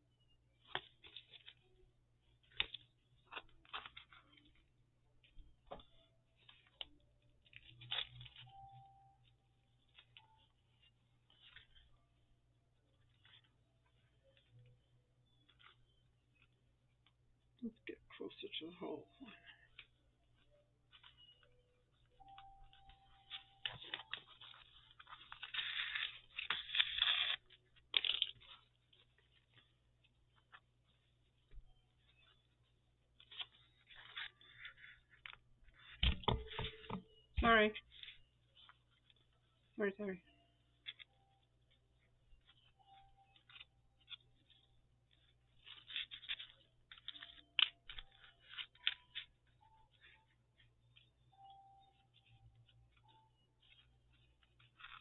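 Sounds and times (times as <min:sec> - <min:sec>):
paper pages rustling: 0:00.6 - 0:17.2, 0:19.2 - 0:39.7, 0:40.6 - 0:55.0
needle ticking through paper: 0:40.6 - 0:55.0.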